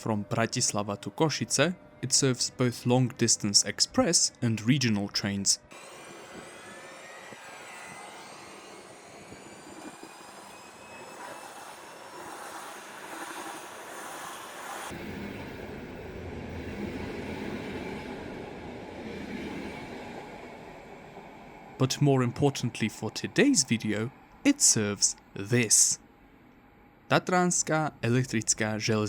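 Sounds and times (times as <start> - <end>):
train running rumble: 5.7 - 25.9
electric train motor whine: 5.7 - 27.0.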